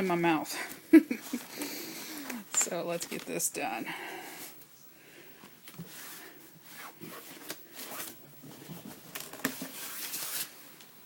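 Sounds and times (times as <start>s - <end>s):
paper rustling: 1.1s - 3.5s, 5.7s - 10.6s.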